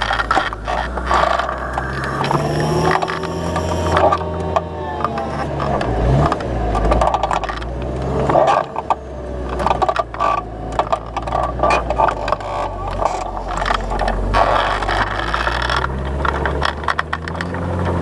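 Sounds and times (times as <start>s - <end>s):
plough rattling and scraping: 0.0s - 18.0s
tractor diesel engine running: 0.0s - 18.0s.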